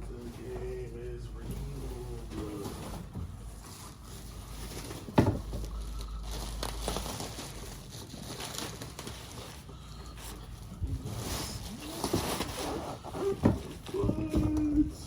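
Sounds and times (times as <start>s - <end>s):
rustling and clattering objects: 0.0s - 15.0s.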